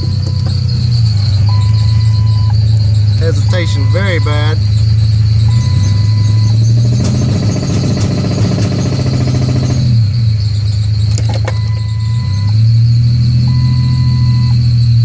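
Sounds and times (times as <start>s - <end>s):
squeaky belt squealing: 0.0s - 9.8s
engine running with misfire: 0.0s - 15.0s.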